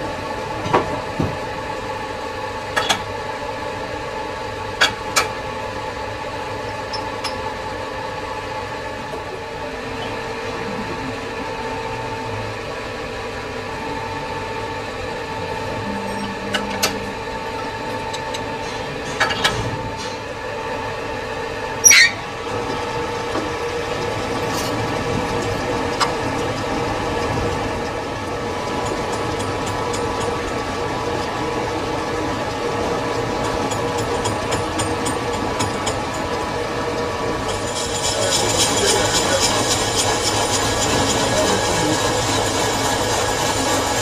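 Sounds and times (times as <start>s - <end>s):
lathe whining: 0.0s - 44.0s.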